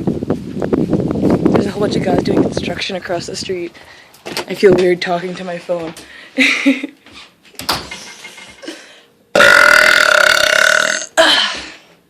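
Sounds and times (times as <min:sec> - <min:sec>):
woman belching: 0:09.3 - 0:11.6.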